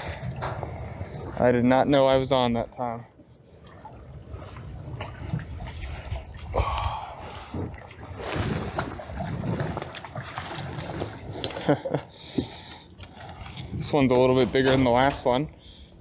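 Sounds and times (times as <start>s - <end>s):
water splashing and sloshing: 0.0s - 16.0s
wind rumbling on microphone: 4.0s - 11.4s.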